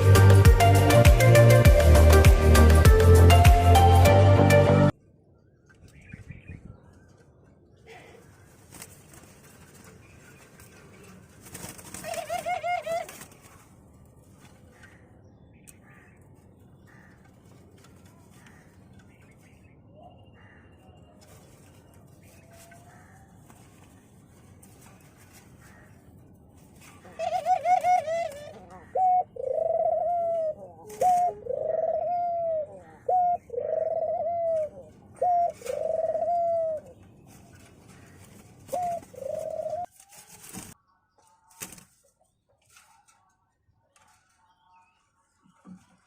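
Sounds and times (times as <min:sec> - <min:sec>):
dove cooing: 0:11.6 - 0:13.3, 0:26.8 - 0:37.0, 0:37.8 - 0:39.9.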